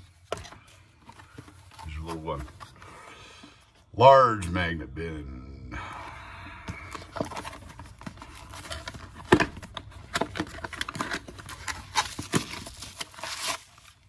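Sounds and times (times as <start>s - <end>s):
packaging crinkling and tearing: 6.8s - 14.0s.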